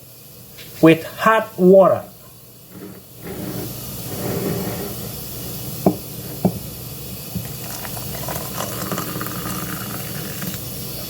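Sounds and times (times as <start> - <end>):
hot water pouring: 7.2 - 11.0.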